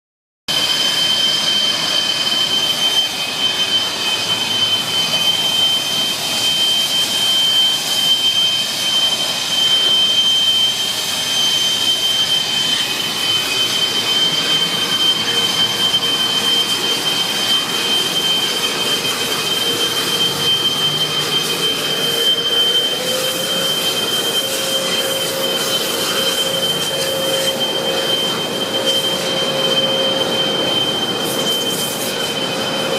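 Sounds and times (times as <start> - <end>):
vacuum high-pitched whine: 0.5 - 32.9.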